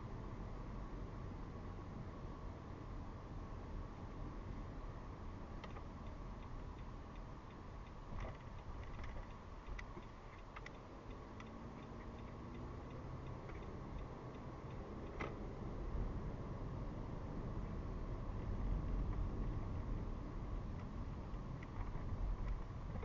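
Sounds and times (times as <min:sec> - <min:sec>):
road and engine rumble: 0:00.0 - 0:23.0
turn signal ticking: 0:05.6 - 0:16.5.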